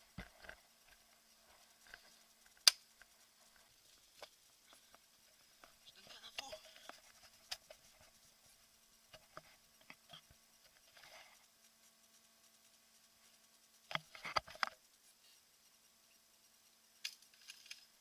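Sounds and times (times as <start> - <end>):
rustling and handling noises: 0.0 - 16.3, 16.9 - 18.0
small clicks: 16.9 - 18.0.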